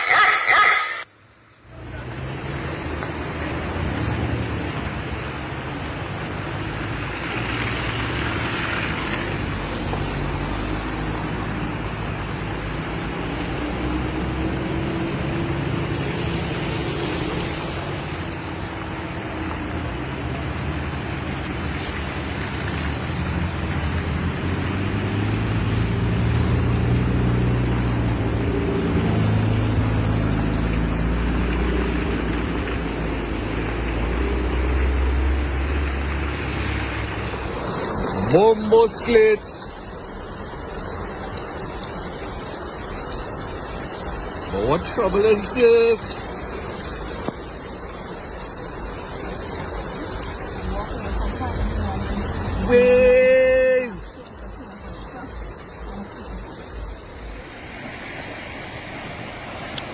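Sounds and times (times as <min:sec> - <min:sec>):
floodwater rushing: 0:00.0 - 0:59.9
vehicle engine running: 0:39.6 - 0:57.8.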